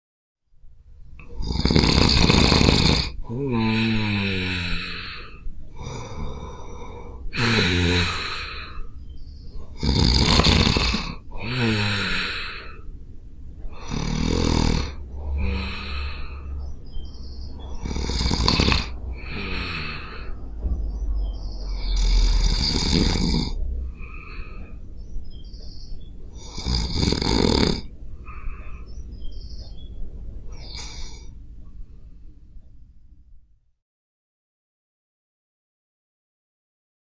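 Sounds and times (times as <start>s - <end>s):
person snoring: 1.2s - 8.9s, 9.7s - 12.9s, 13.7s - 16.6s, 17.6s - 20.4s, 21.7s - 24.8s, 26.3s - 28.9s, 30.5s - 31.3s.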